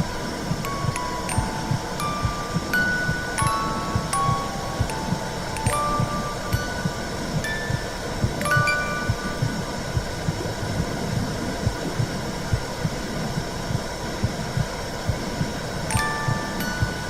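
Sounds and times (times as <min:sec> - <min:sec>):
wind chimes ringing: 0:00.0 - 0:10.3, 0:15.9 - 0:17.0
muffled heartbeat thumps: 0:06.8 - 0:15.6.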